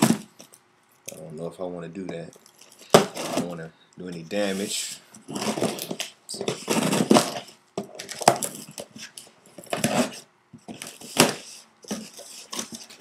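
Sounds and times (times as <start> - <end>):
packing tape scraping and tearing: 2.8 - 3.6, 5.3 - 13.0.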